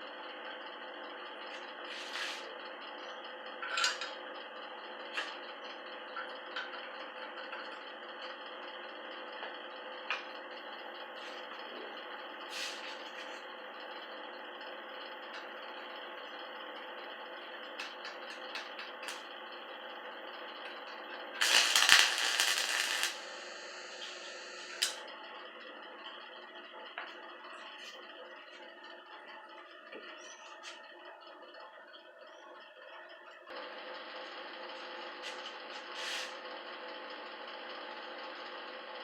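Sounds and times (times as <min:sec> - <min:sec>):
small clicks: 0:21.4 - 0:23.2
loud hiss: 0:21.4 - 0:24.9.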